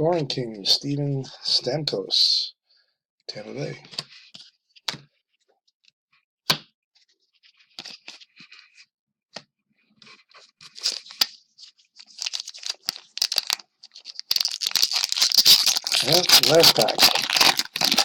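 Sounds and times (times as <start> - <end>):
wrapper tearing and crinkling: 10.7 - 11.2, 12.0 - 18.0.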